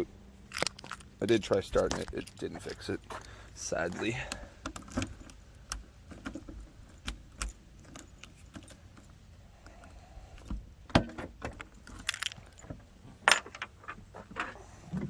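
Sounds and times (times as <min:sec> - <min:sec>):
small hard objects clicking and knocking: 0:00.5 - 0:01.1, 0:11.9 - 0:12.7.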